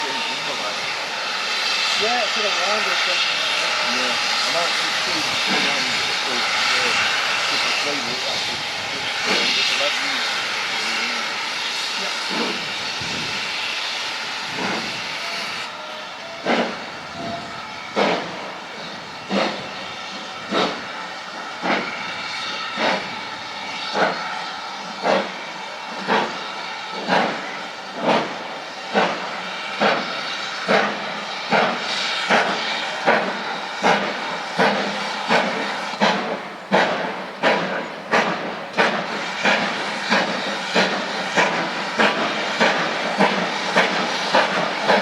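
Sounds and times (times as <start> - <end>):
steam hissing: 0.0 - 45.0
steam locomotive exhaust beats: 0.0 - 45.0.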